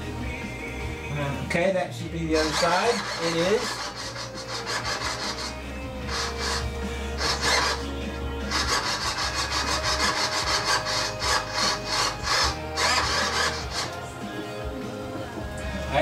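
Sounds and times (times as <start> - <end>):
servos whirring: 2.3 - 14.2.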